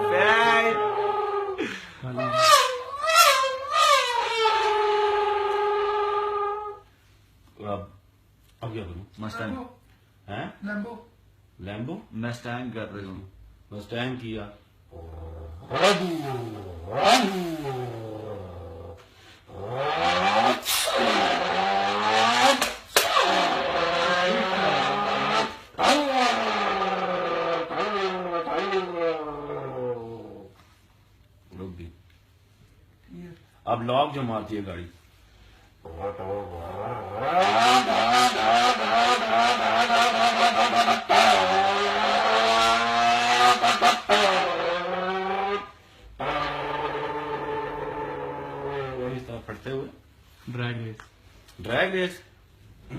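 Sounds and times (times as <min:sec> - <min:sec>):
man imitating car engine: 0:15.0 - 0:18.9, 0:19.5 - 0:30.5, 0:35.8 - 0:49.4.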